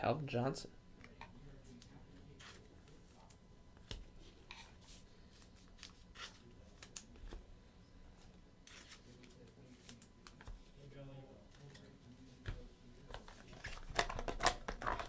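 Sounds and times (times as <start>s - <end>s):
cards rustling in plastic sleeves: 1.6s - 7.4s, 8.2s - 10.7s.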